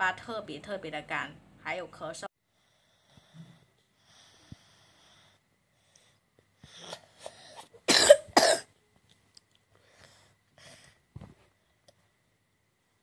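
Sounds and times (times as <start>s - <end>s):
child coughing: 7.9s - 8.7s
child throat sounds: 7.9s - 8.7s.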